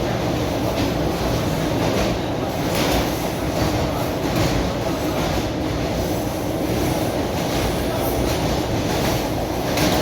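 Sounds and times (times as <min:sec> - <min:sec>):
train carriage rumbling: 0:00.0 - 0:10.0.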